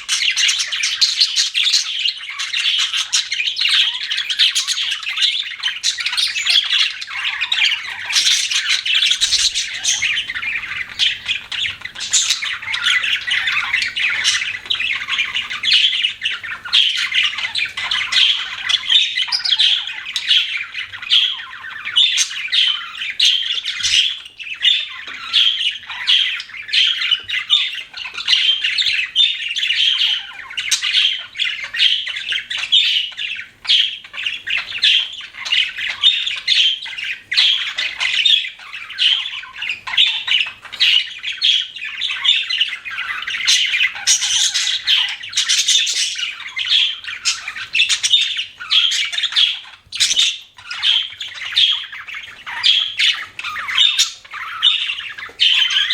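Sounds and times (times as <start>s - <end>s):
budgerigars chattering: 0.0s - 55.9s.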